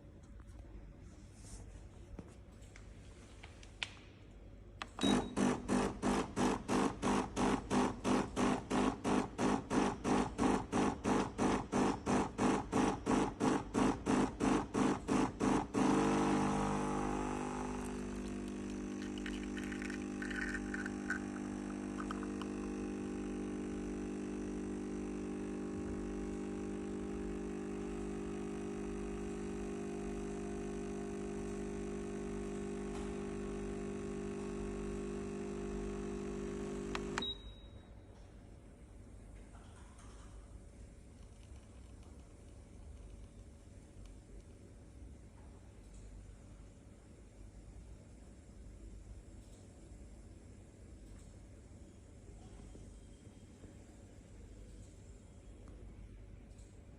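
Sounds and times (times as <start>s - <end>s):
espresso machine pump pulsing: 5.0s - 37.2s.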